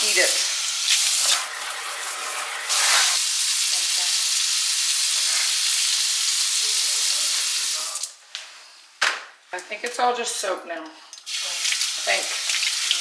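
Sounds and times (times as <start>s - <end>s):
tap water running into sink: 11.2s - 13.0s.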